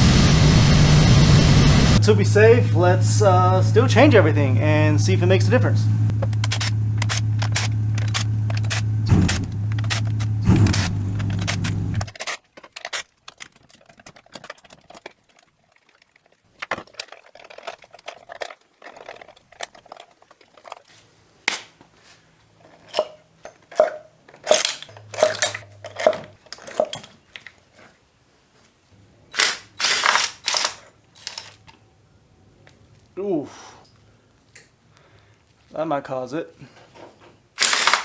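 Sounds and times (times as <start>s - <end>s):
car engine running: 0.0s - 12.1s
hand tools clicking and scraping: 6.1s - 21.7s, 22.6s - 28.0s, 29.3s - 31.8s, 37.6s - 38.0s.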